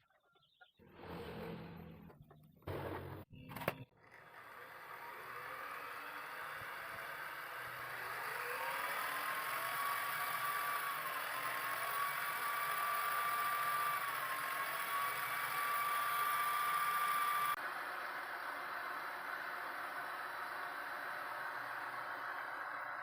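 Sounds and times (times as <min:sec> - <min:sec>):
lathe gearbox whine: 0:03.4 - 0:23.0.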